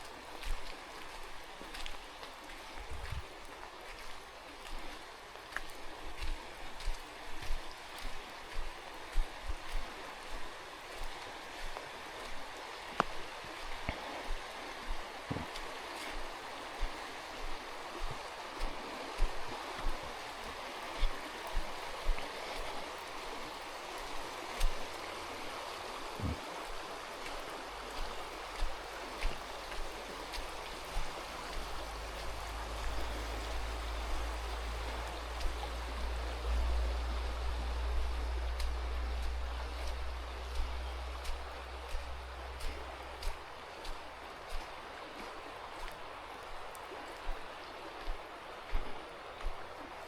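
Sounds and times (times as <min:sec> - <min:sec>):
mountain river rushing: 0:00.0 - 0:50.0
thudding footsteps: 0:02.8 - 0:03.4, 0:15.3 - 0:16.2, 0:26.2 - 0:26.7, 0:28.0 - 0:44.7
low rumble: 0:31.7 - 0:42.6.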